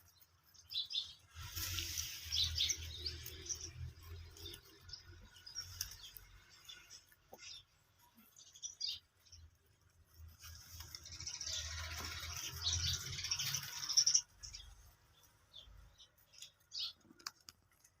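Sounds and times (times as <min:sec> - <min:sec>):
small birds chirping: 0:00.0 - 0:18.0
loud rustling noise: 0:01.3 - 0:03.4.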